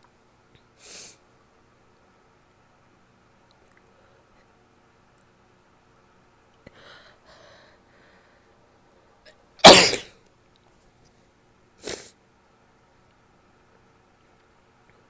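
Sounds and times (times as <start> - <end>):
breathy inhales: 6.7 - 8.5
person sneezing: 9.6 - 10.1, 11.8 - 12.1.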